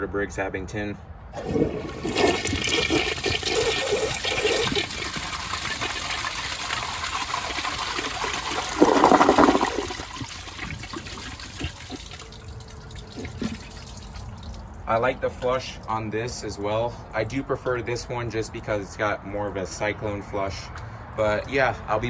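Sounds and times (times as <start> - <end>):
toilet flushing: 1.4 - 15.6.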